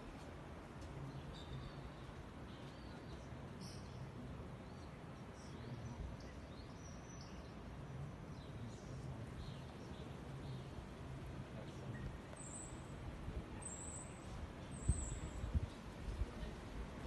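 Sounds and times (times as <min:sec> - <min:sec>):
small birds chirping: 0:00.8 - 0:07.6, 0:11.6 - 0:13.0, 0:13.6 - 0:16.6.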